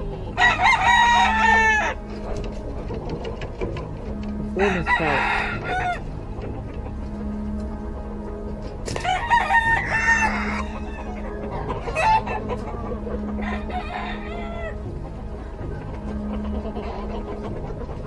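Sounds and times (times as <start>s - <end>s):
rooster crowing: 0.4s - 2.1s, 4.4s - 6.1s, 9.0s - 12.6s, 13.2s - 14.8s.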